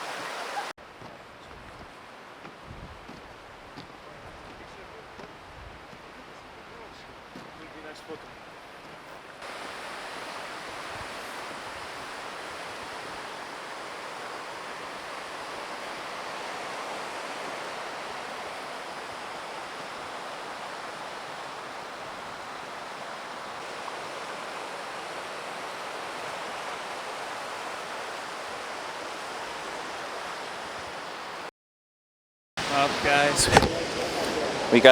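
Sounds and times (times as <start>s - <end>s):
waterfall rushing: 0.0s - 0.7s, 9.4s - 31.5s, 32.6s - 34.9s.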